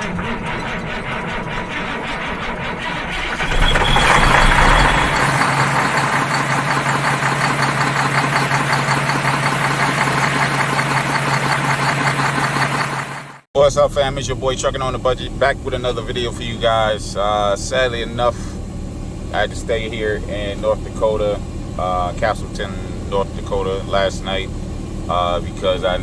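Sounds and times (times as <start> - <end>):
diesel truck engine idling: 0.0 - 26.0.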